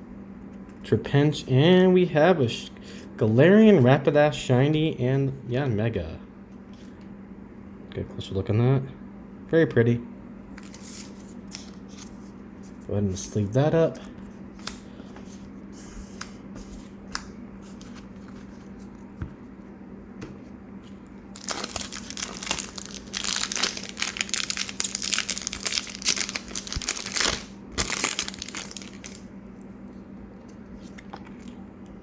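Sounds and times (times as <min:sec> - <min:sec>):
foil wrapper crinkling: 0:21.3 - 0:29.3.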